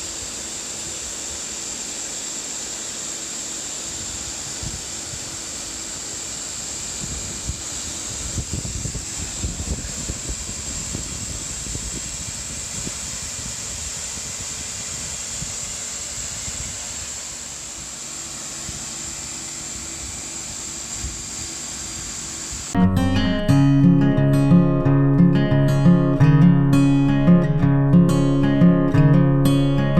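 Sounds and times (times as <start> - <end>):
acoustic guitar music: 22.8 - 29.9.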